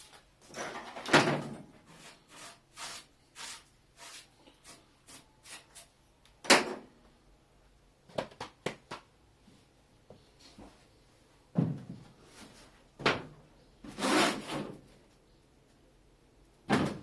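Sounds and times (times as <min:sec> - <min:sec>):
hand sanding strokes: 0:01.9 - 0:05.9.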